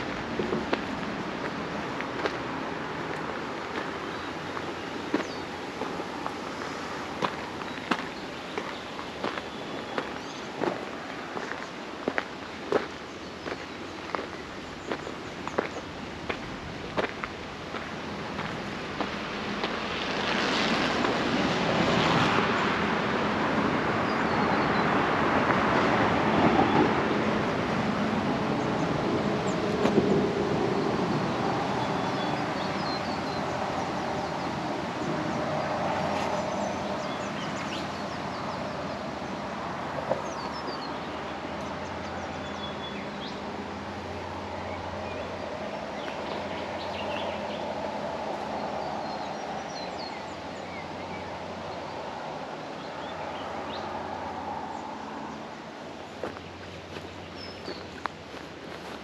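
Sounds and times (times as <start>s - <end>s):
road vehicle passing: 0.0s - 59.0s
small birds chirping: 3.1s - 19.2s, 28.6s - 54.0s, 54.6s - 59.0s.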